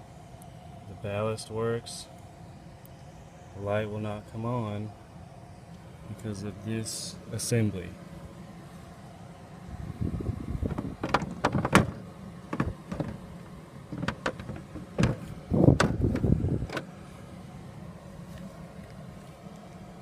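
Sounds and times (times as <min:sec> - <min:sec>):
low steady hum: 0:00.0 - 0:20.0
handling clicks and knocks: 0:10.7 - 0:13.3, 0:13.9 - 0:16.9.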